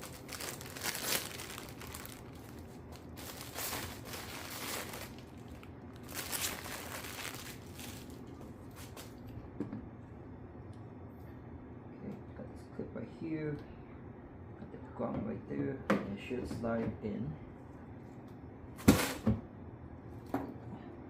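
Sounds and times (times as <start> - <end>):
plastic parts rustling and scraping: 0.0 - 9.1.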